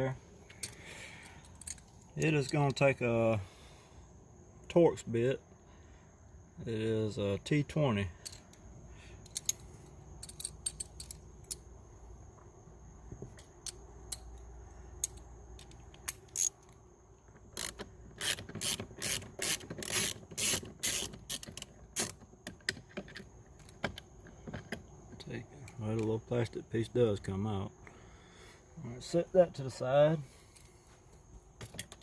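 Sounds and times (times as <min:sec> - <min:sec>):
screwdriver ratchet clicks: 0:17.6 - 0:22.2.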